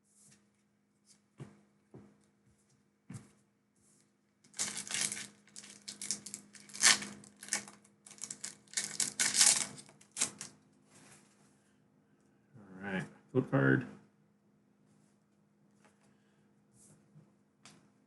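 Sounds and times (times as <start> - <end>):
foil pack crinkling: 4.5 - 10.5.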